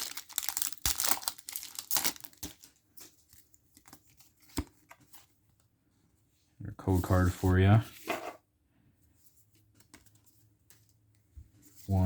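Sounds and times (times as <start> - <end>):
foil wrapper crinkling and tearing: 0.0 - 2.8.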